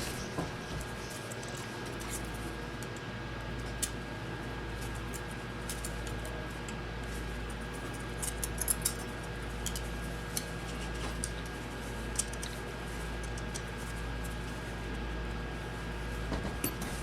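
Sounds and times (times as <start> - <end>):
steady low hum: 0.0 - 17.0
small tools and metal parts clicking: 8.2 - 10.5.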